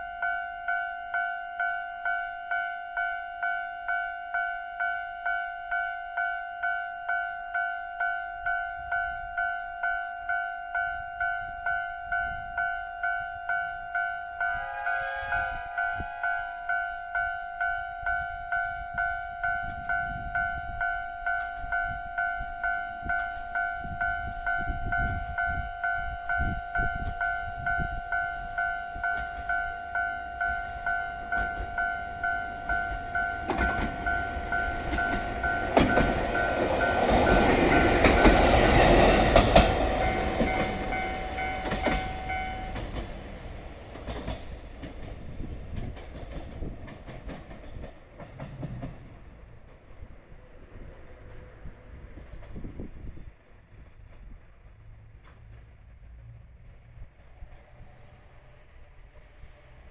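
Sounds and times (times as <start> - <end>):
level-crossing warning bell: 0.0 - 43.4
train running noise: 14.4 - 59.9.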